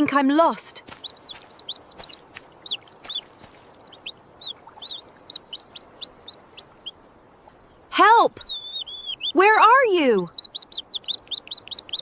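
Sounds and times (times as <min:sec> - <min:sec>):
baby chick peeping: 0:00.9 - 0:07.2, 0:08.4 - 0:12.0.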